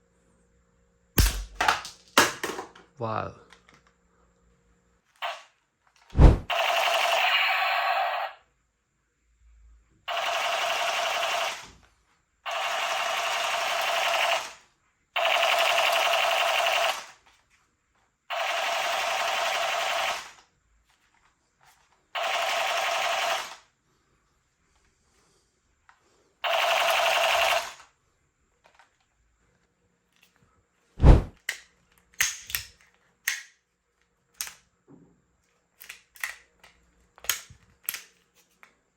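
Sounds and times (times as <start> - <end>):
toy blaster firing bursts: 5.2 - 5.5, 6.4 - 8.4, 10.1 - 11.7, 12.5 - 14.6, 15.2 - 17.2, 18.3 - 20.4, 22.2 - 23.6, 26.4 - 27.9.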